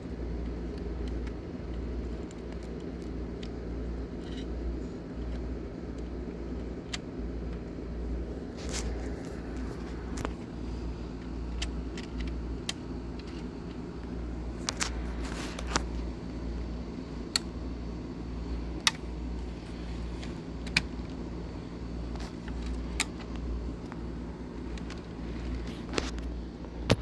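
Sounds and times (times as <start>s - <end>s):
sharp clicks: 18.4s - 21.2s.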